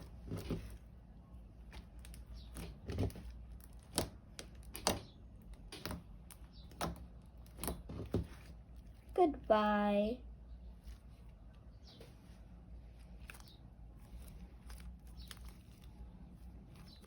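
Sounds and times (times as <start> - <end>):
slime kneaded by hand: 0.0 - 9.6, 10.2 - 17.0
sticky clicks and pops: 2.0 - 7.9.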